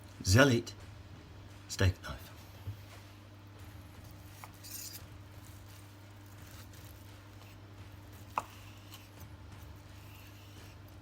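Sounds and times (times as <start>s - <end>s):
steady low hum: 0.0s - 11.0s
knife slicing through steak: 4.1s - 11.0s.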